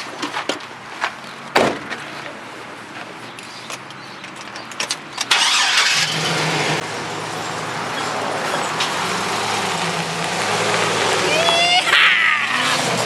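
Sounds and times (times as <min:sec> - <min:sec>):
engine cranking: 0:03.7 - 0:06.8
engine starter clicks: 0:05.2 - 0:06.4.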